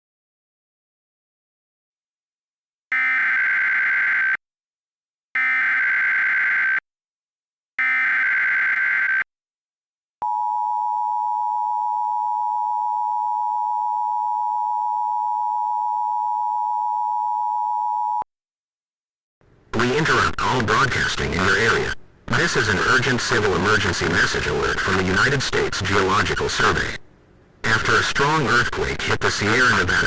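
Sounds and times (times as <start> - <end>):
two-tone attention signal: 10.2 - 18.2.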